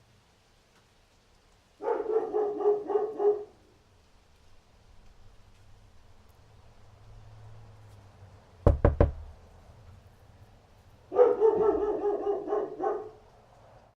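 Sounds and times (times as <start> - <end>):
dog barking: 1.8 - 3.6, 11.1 - 13.3
sharp knocks: 8.7 - 9.3.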